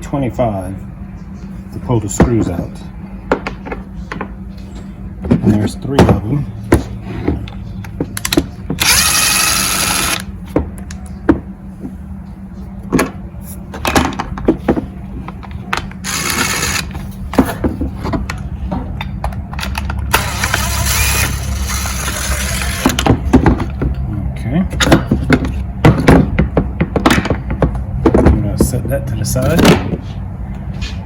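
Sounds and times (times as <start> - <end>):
cordless power driver running: 8.2 - 10.3, 16.0 - 17.0, 20.1 - 23.0.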